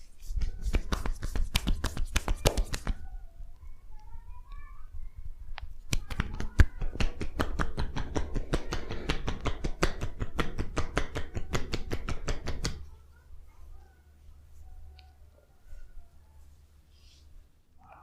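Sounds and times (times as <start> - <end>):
hands slapping on body: 0.2 - 3.0, 5.8 - 12.9.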